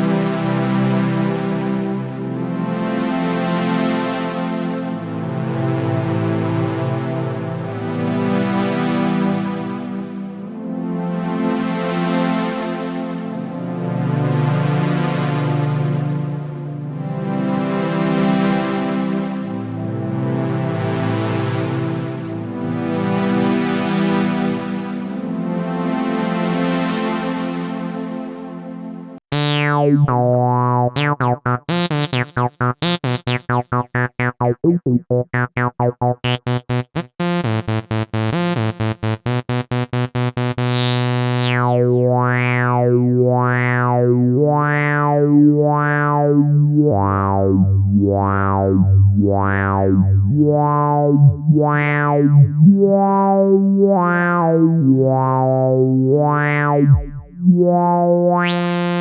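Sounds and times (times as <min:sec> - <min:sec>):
synthesizer bass line: 0:29.3 - 0:59.0
synthesizer staccato notes: 0:29.3 - 0:59.0.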